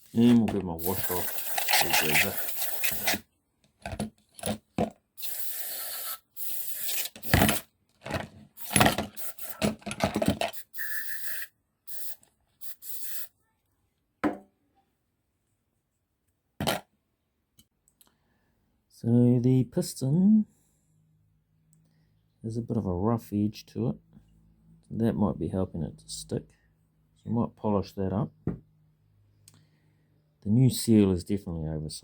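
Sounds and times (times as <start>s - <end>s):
metal parts scraping and knocking: 0.2s - 3.2s
water hissing: 0.8s - 3.2s, 5.2s - 7.6s, 8.6s - 9.6s.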